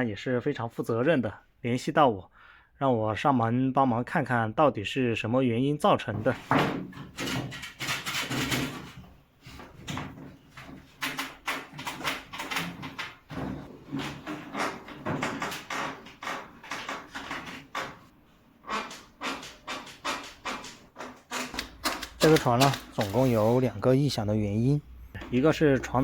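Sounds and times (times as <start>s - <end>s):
wooden bed creaking and squeaking: 6.2s - 23.7s.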